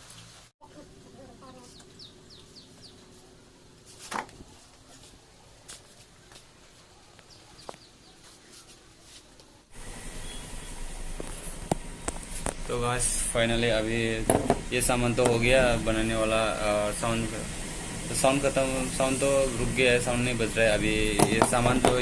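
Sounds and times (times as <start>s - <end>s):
small birds chirping: 0.0s - 3.8s, 6.2s - 9.0s
loud knock: 14.3s - 14.7s.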